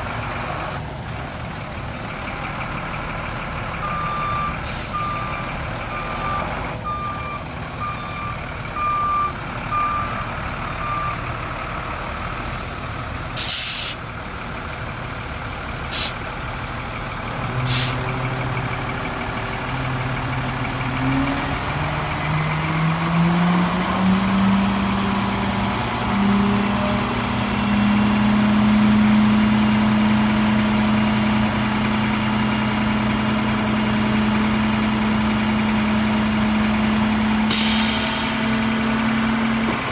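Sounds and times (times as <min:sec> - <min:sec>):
diesel truck engine revving: 0:00.0 - 0:39.9
reversing alarm beeping: 0:03.8 - 0:11.4
air brake hisses: 0:13.4 - 0:14.0, 0:15.9 - 0:16.2, 0:17.6 - 0:18.0, 0:37.5 - 0:38.5.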